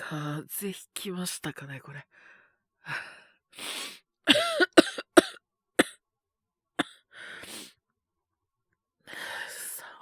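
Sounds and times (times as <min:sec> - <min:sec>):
man coughing: 0:04.3 - 0:05.9.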